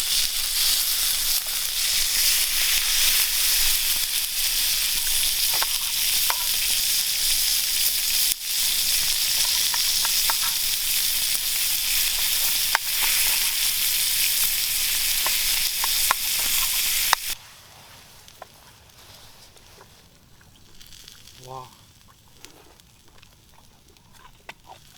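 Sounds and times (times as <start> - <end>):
fat popping and crackling: 0.0 - 17.4, 18.2 - 24.9
meat sizzling as it fries: 0.0 - 17.4, 20.5 - 23.5.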